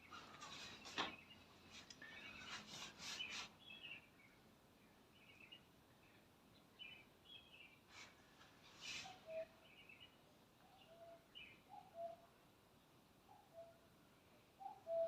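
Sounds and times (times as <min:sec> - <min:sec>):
birds chirping: 0:00.0 - 0:07.8.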